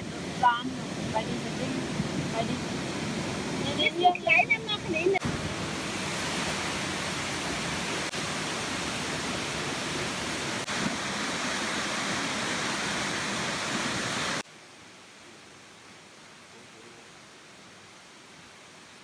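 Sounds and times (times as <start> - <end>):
waterfall rushing: 0.0 - 14.5.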